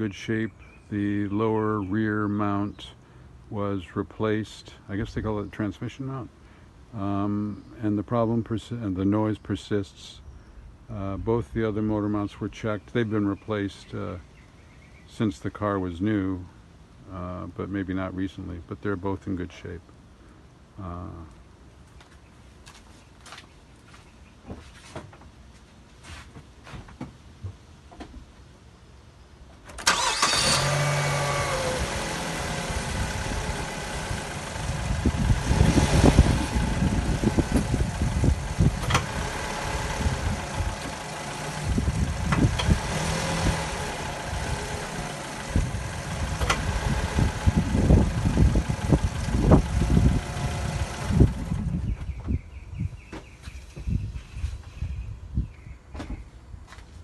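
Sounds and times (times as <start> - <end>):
car engine cranking and idling: 29.6 - 52.2.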